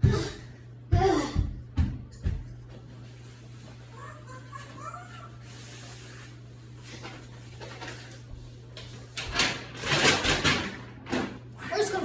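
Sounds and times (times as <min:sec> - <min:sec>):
steady low hum: 0:00.0 - 0:09.8.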